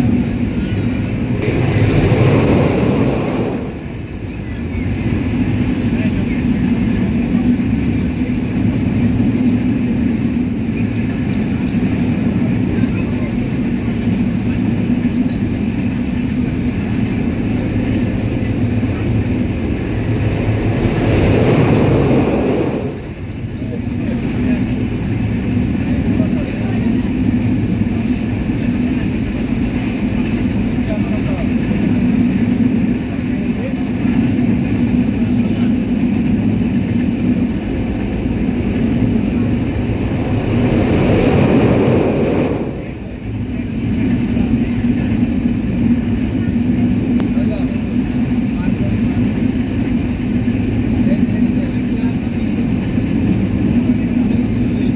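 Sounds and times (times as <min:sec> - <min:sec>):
train rumbling: 0:00.0 - 0:54.9
rushing swell: 0:00.9 - 0:04.4, 0:18.2 - 0:23.4, 0:36.6 - 0:43.5.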